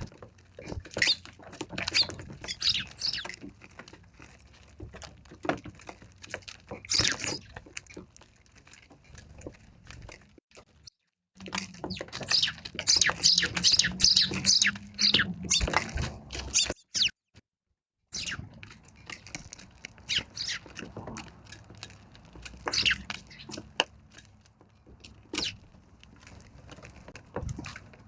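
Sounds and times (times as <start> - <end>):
sparrows chirping: 1.0 - 3.4, 6.9 - 7.6, 11.7 - 17.2, 18.1 - 18.5, 20.0 - 20.8, 22.6 - 23.8, 25.4 - 25.6.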